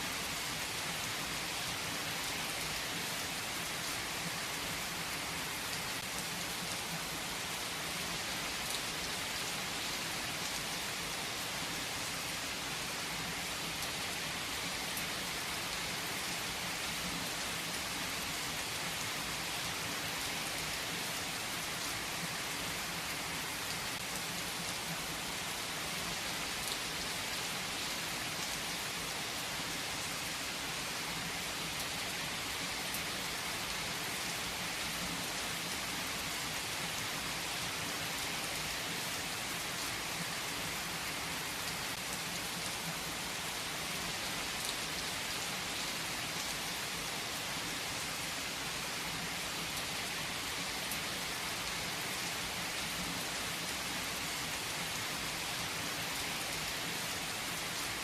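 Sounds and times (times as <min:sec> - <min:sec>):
rain hiss: 0:00.0 - 0:58.0.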